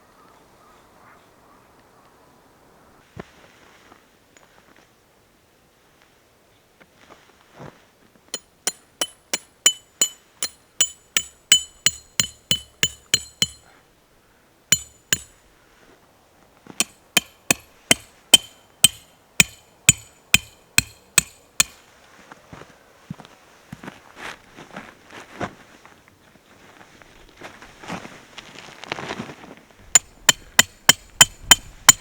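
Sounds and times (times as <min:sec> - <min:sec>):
hammer striking metal pegs: 0:08.4 - 0:13.7, 0:14.7 - 0:15.4, 0:16.8 - 0:21.8, 0:30.0 - 0:32.0.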